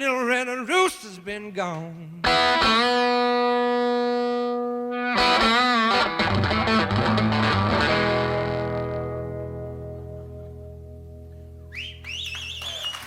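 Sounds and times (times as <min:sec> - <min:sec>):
distorted electric guitar bending notes: 0:02.1 - 0:12.0
blues band final chord: 0:05.0 - 0:11.6.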